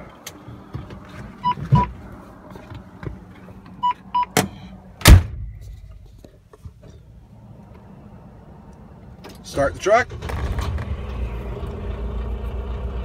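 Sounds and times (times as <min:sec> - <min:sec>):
heavy thump: 0:04.4 - 0:05.8.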